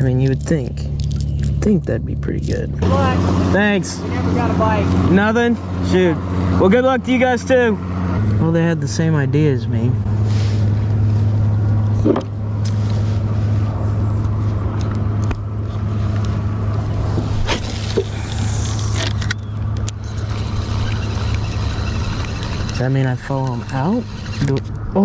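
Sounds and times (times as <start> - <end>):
boat motor humming: 9.4 - 24.8.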